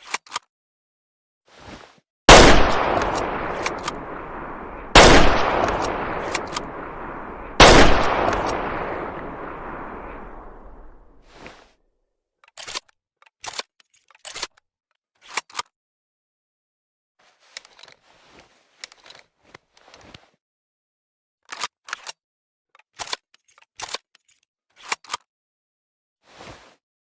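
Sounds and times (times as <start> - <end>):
rifle bolt metallic clicks: 2.3 - 11.0.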